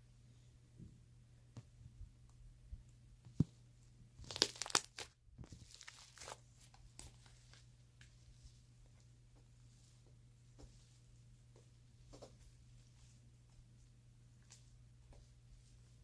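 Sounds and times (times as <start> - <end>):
slime clicking and crackling: 4.2 - 5.1.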